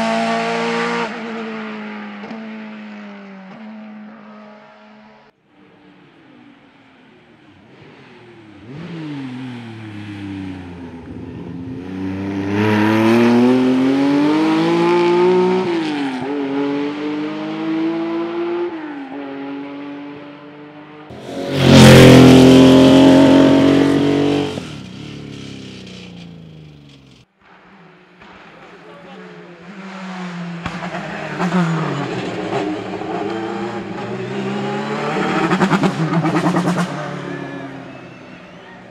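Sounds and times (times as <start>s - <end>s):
loud race car passing: 7.6s - 25.7s, 29.3s - 38.9s
race car engine revving: 11.7s - 18.7s, 19.3s - 27.2s, 29.6s - 38.6s.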